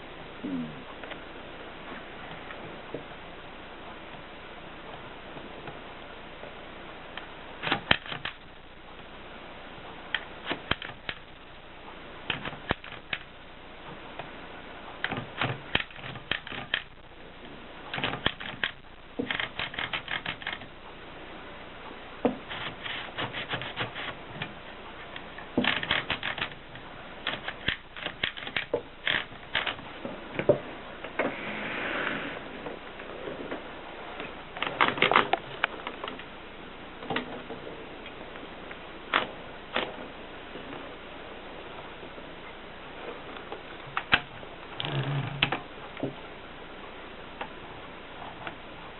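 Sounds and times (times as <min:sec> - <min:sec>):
typewriter rasping: 0:07.6 - 0:08.4, 0:10.4 - 0:11.2, 0:15.1 - 0:17.0, 0:17.9 - 0:20.7, 0:22.5 - 0:24.6, 0:25.6 - 0:29.8.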